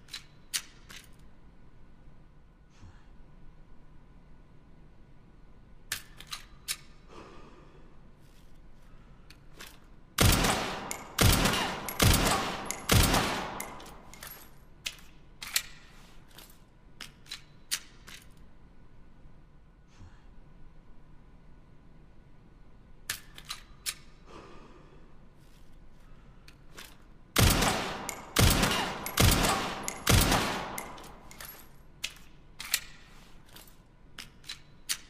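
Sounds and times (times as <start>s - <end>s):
pistol shots with echo: 10.2s - 14.1s, 27.4s - 31.3s.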